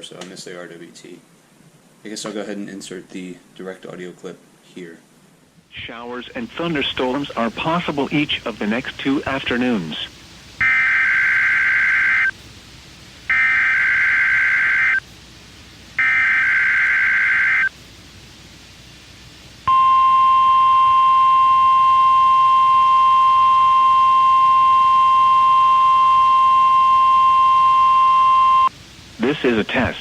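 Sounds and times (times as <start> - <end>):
steady warning alarm tone: 6.2 - 12.3, 13.3 - 15.0, 16.0 - 17.7, 19.7 - 28.7
screechy digital data tones: 10.6 - 12.3, 13.3 - 15.0, 16.0 - 17.7.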